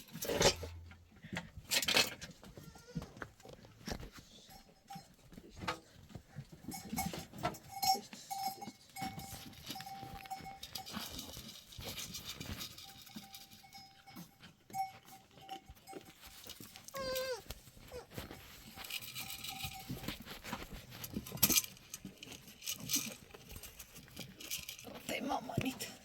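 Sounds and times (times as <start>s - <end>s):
goat bell ringing: 4.1s - 26.0s.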